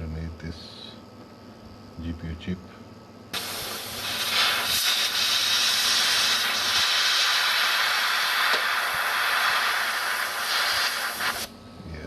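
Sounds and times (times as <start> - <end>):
spray jet hissing: 3.4 - 11.5.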